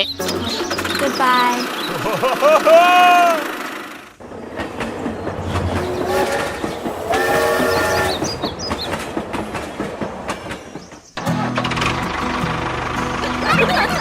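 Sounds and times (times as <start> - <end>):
train wheels clattering on rails: 0.0 - 14.0
train horn: 5.8 - 8.5.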